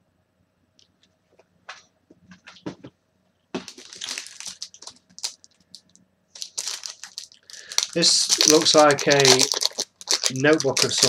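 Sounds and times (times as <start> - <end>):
packaging crackles and taps: 3.6 - 11.0
packaging crinkling and rustling: 3.6 - 11.0.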